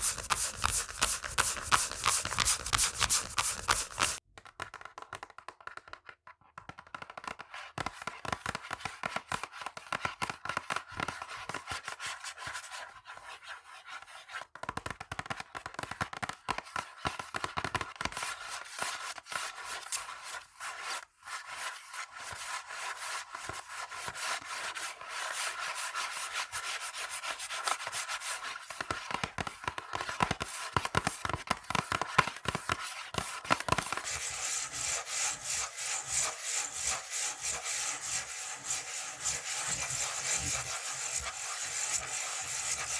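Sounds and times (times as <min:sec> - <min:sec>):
fingernails scratching textured surface: 0:00.0 - 0:04.2, 0:34.0 - 0:42.9.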